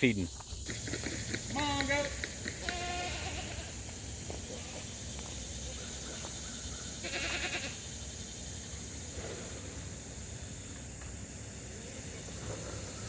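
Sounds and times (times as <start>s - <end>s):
goats bleating: 1.5s - 3.8s, 7.0s - 7.8s.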